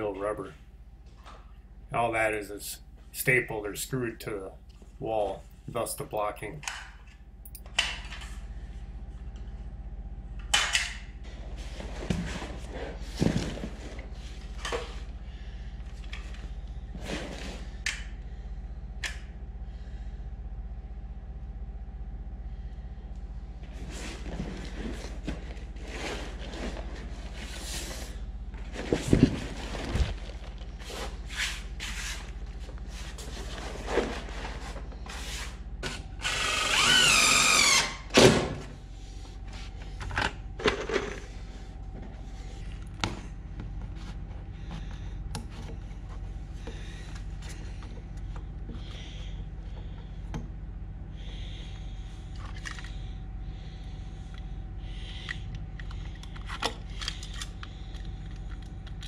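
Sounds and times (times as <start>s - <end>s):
steady low hum: 0.0s - 59.0s
cordless drill running: 36.2s - 38.0s.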